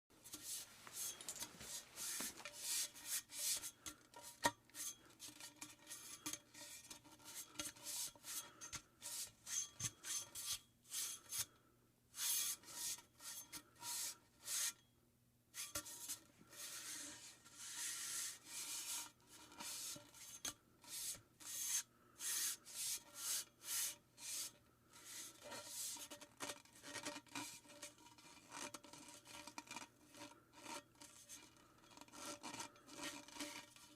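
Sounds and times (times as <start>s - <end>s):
rough rubbing and scraping strokes: 0.3s - 6.3s, 16.5s - 20.2s.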